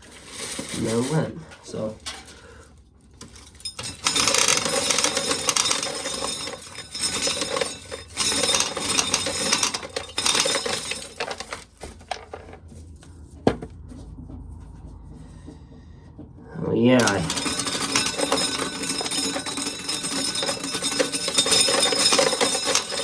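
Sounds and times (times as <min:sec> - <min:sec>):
corn kernels rattling out: 0:00.0 - 0:02.0, 0:03.2 - 0:12.5, 0:17.0 - 0:23.0.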